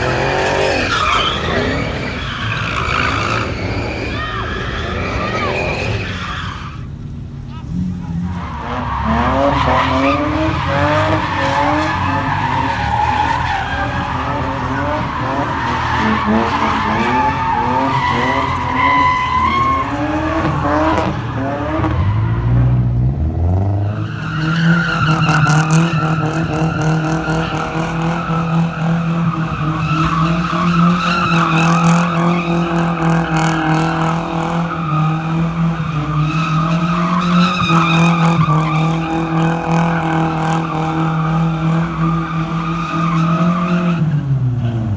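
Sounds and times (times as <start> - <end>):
car engine revving hard: 0.0 - 4.2, 7.6 - 24.0
tires squealing: 0.0 - 44.9.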